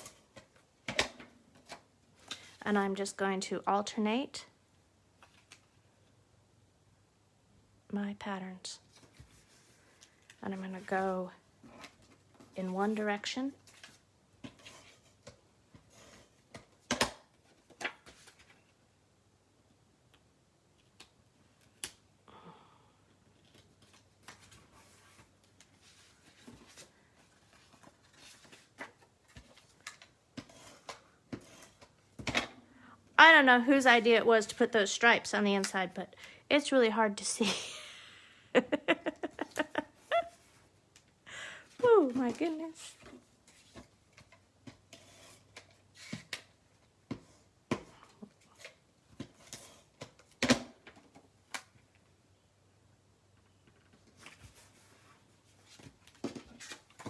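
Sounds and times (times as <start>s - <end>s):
paper rustling: 23.4s - 31.9s.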